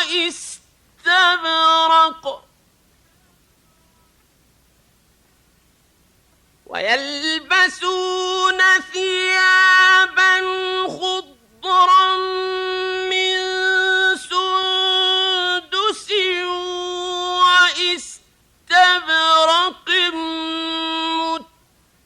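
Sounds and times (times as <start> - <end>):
man reciting melodically: 0.0 - 2.6, 6.6 - 21.7.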